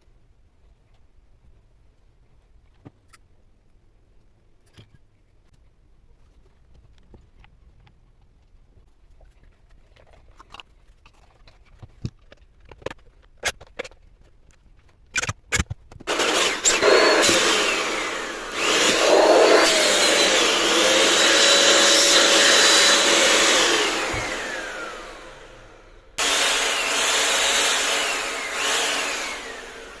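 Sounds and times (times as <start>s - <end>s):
handheld vacuum motor whine: 16.1s - 30.0s.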